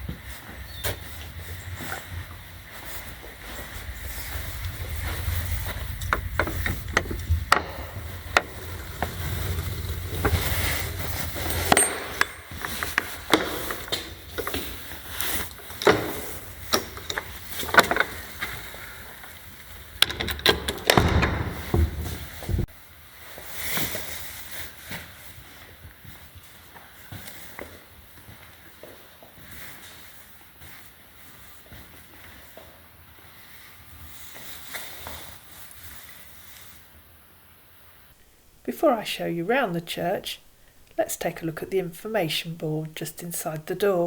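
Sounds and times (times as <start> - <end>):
low rumble: 1.0 - 11.6
sharp knocks and clicks: 6.0 - 9.2, 20.0 - 22.7.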